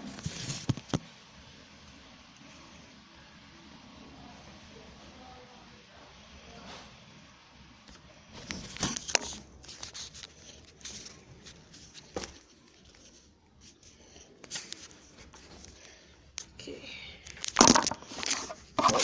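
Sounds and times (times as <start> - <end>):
handling rustling and scraping: 0.0 - 1.0, 8.3 - 16.0, 17.3 - 19.0.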